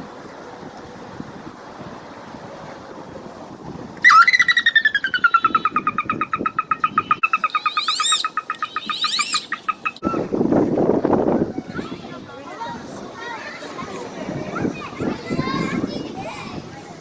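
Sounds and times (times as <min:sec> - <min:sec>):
bird trill: 0:04.0 - 0:10.3
rising whistles: 0:04.0 - 0:10.4.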